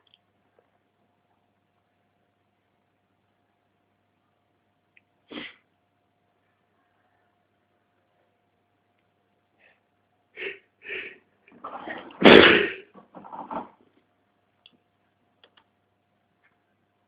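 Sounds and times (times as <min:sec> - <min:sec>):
man sneezing: 0:05.3 - 0:05.6.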